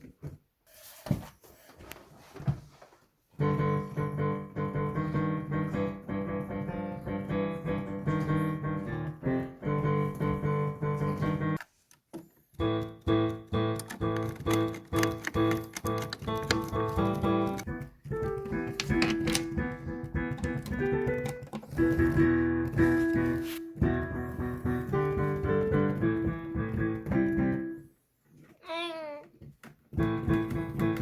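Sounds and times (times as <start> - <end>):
digital piano playing: 3.4 - 11.6, 12.6 - 27.9, 30.0 - 31.0.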